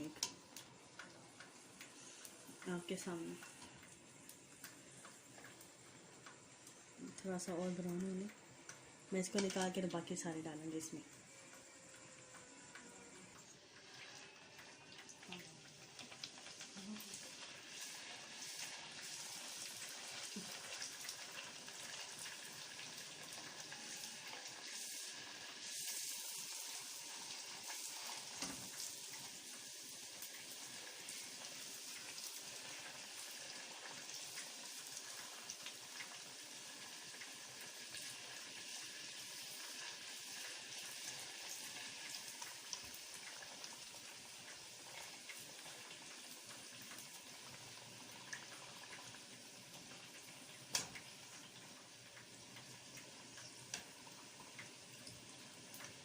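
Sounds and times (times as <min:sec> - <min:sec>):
dough deep-frying in oil: 0:00.0 - 0:56.0
small crackles: 0:00.0 - 0:56.0.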